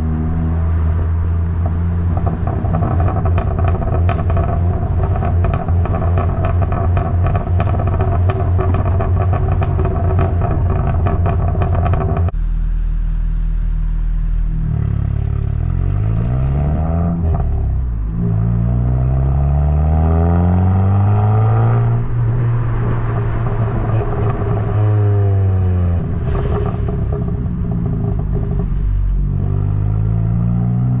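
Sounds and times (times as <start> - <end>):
car engine revving: 0.0 - 31.0
exhaust crackles: 0.0 - 31.0.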